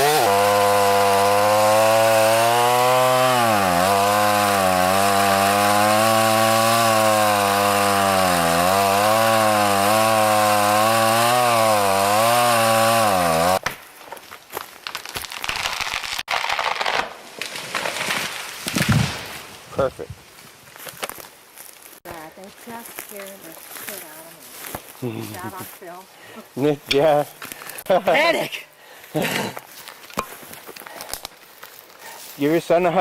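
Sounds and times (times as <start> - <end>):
chainsaw cutting wood: 0.0 - 13.8, 14.9 - 19.4
falling tree crackling and rustling: 13.6 - 22.0.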